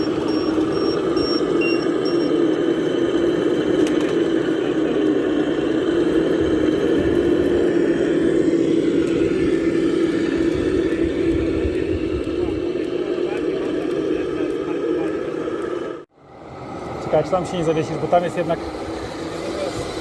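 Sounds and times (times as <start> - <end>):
high beeping: 0.0 - 2.9
model truck motor humming: 0.0 - 20.0.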